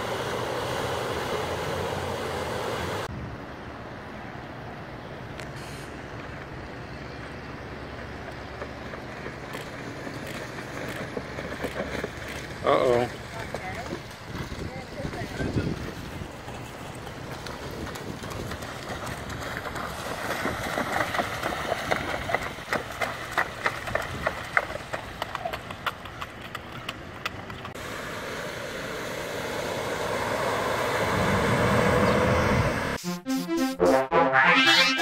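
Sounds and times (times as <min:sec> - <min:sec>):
outdoor rushing noise: 0:00.0 - 0:04.4, 0:27.0 - 0:33.1.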